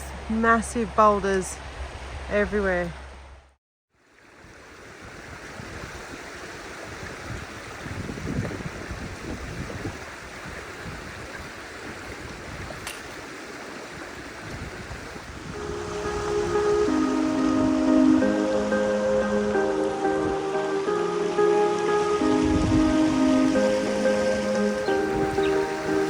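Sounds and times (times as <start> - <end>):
music: 15.6 - 26.0.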